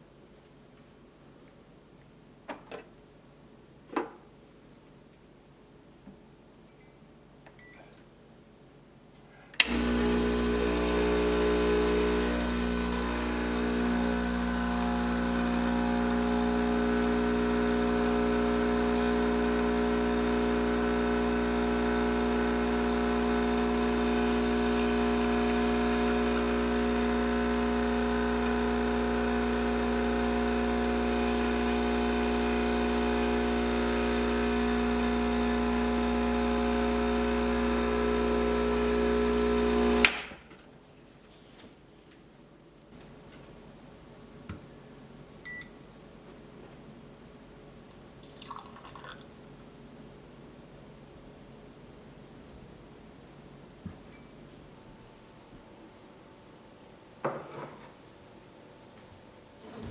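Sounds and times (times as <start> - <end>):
espresso machine pump buzzing: 9.6 - 40.3.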